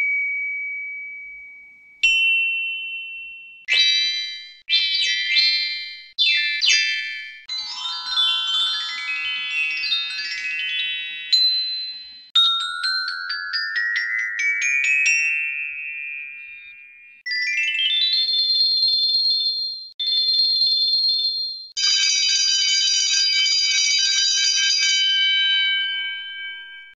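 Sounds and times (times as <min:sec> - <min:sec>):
continuous bells ringing: 0:07.4 - 0:17.7, 0:21.8 - 0:26.9
rising runs of struck bells: 0:07.5 - 0:14.2.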